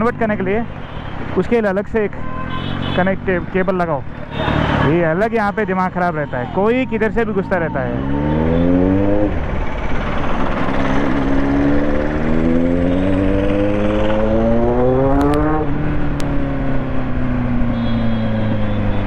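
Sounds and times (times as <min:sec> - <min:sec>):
motorcycle engine accelerating: 0:07.8 - 0:18.8.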